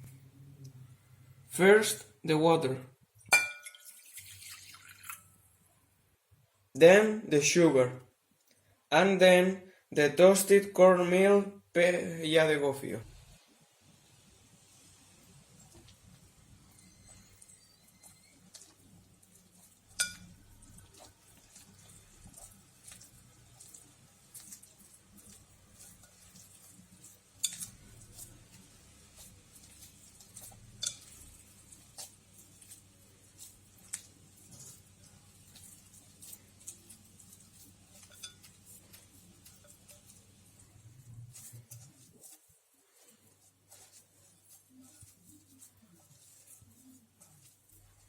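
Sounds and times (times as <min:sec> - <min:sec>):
spoon scraping and tapping a bowl: 0:03.3 - 0:04.0, 0:16.7 - 0:42.4.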